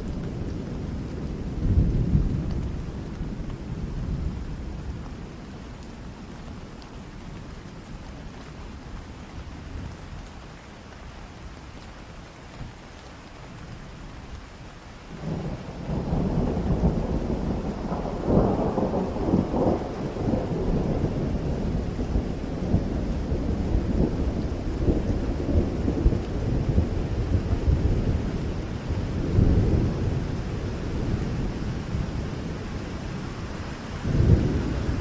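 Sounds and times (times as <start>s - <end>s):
low thunder rumble: 0.0s - 6.1s, 15.1s - 35.0s
steady rain: 0.0s - 35.0s.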